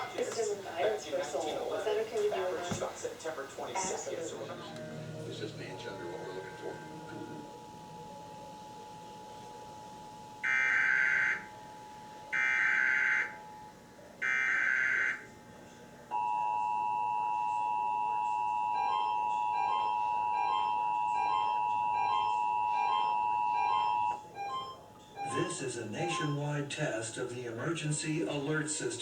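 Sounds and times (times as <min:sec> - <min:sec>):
faint regular beeps: 0:00.0 - 0:26.8
two-tone attention signal: 0:16.1 - 0:26.6.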